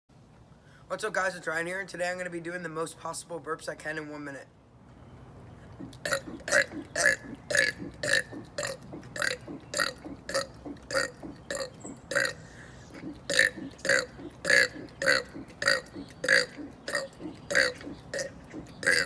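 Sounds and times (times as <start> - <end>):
man burping: 5.8 - 12.4, 13.0 - 19.0.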